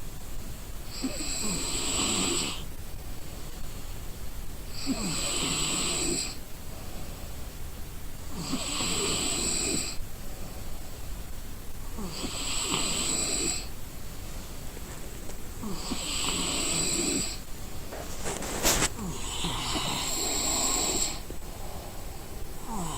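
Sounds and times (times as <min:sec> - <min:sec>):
person snoring: 0:12.0 - 0:13.7, 0:15.6 - 0:17.4, 0:18.9 - 0:22.9.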